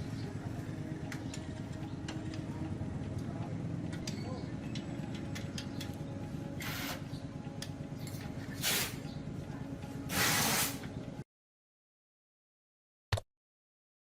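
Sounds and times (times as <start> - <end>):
low machine hum: 0.0 - 10.1
spraying hisses: 10.1 - 10.8.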